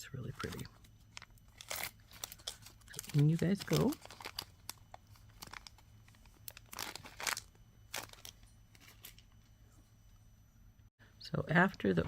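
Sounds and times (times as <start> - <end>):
plastic packaging crinkling: 0.4 - 9.4.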